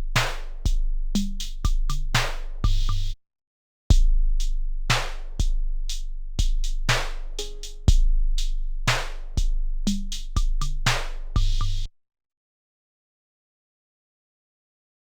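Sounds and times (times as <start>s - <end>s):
deep kick drum: 0.0s - 3.1s, 3.9s - 11.9s
snare and hi-hat hits: 0.1s - 3.2s, 3.9s - 11.9s.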